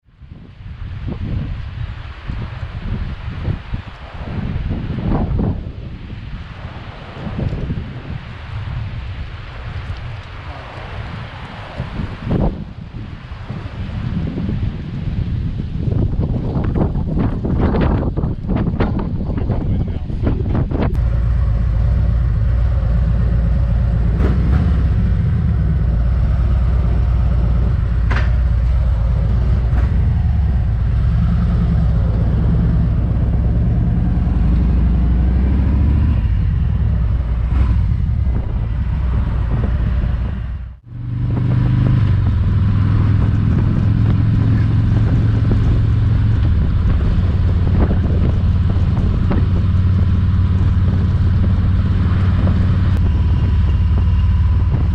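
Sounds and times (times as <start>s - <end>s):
motorcycle engine running: 19.7s - 54.9s.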